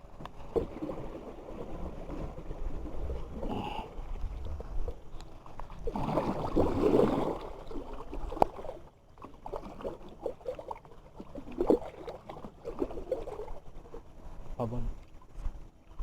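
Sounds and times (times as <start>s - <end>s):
water splashing: 0.3s - 14.0s.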